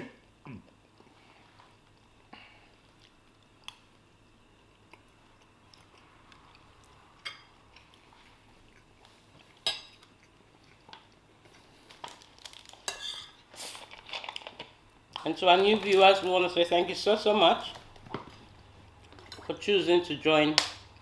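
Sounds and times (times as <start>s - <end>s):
quiet chewing: 0.5s - 15.3s.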